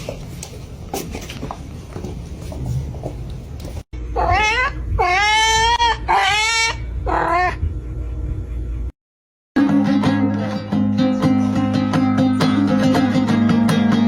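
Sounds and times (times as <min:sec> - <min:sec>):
cat meowing: 0:04.2 - 0:07.6.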